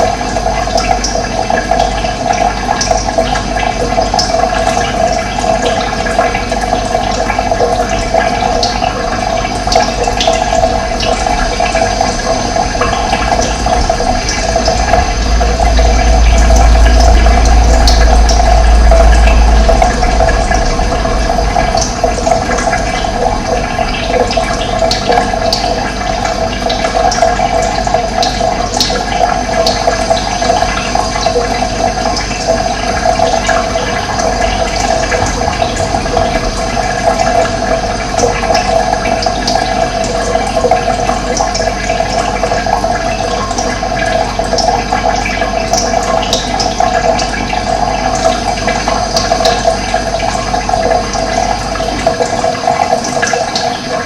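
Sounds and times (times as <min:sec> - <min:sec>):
running water: 0:00.0 - 0:54.0
low rumble: 0:01.7 - 0:41.6.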